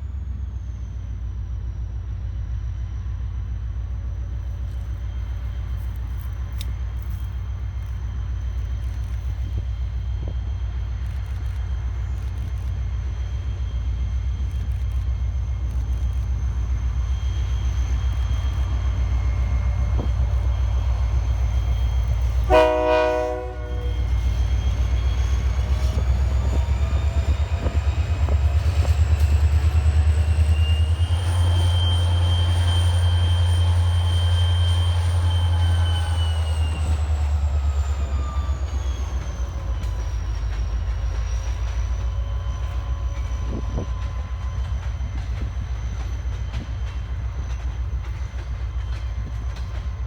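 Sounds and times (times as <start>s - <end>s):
locomotive air horn blast: 22.4s - 24.2s.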